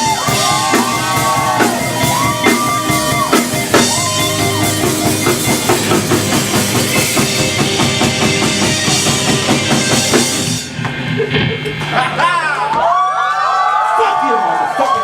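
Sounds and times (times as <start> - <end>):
live rock band playing: 0.0 - 12.7
drum kit beat: 0.0 - 12.8.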